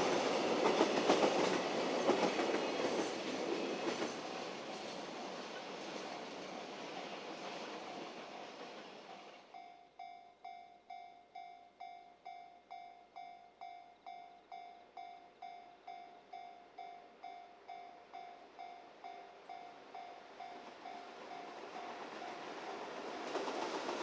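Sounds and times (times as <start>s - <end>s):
train rumble: 0.0s - 9.5s, 17.2s - 24.0s
level crossing warning bell: 9.5s - 22.8s.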